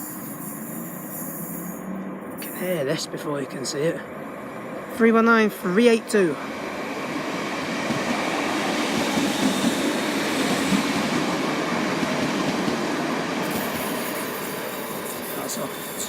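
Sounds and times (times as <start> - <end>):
train wheels rumbling on rail: 6.4 - 16.0.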